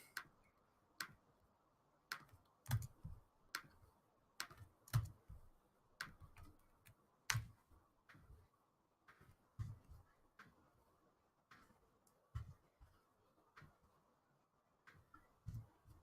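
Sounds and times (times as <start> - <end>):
keyboard clicking: 2.1 - 3.8, 4.4 - 5.2.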